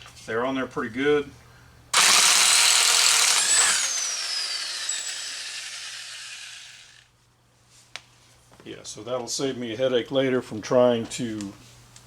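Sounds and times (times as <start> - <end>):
impact wrench hammering: 2.0 - 6.9.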